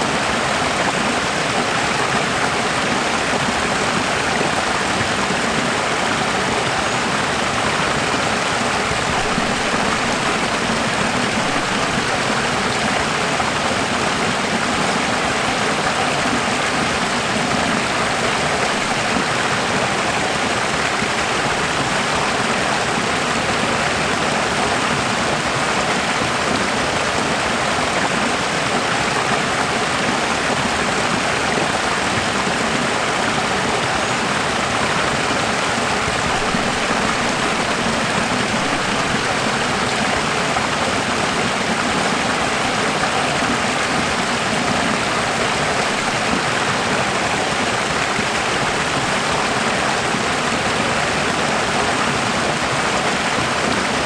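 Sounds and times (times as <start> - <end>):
running water: 0.0 - 54.0.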